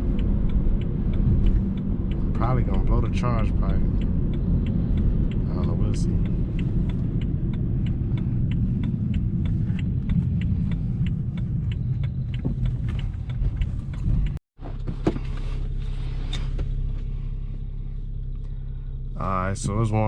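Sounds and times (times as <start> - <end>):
light regular clicking: 0.0 - 14.4
car engine running: 0.0 - 20.0.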